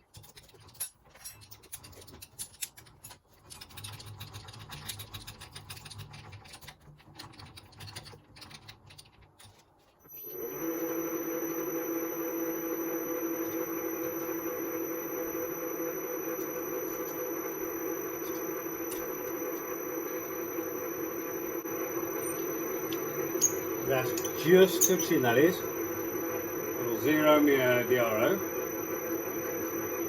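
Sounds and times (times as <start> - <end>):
metal clicks and scraping: 0.0 - 10.0
milling machine motor humming: 10.1 - 30.0.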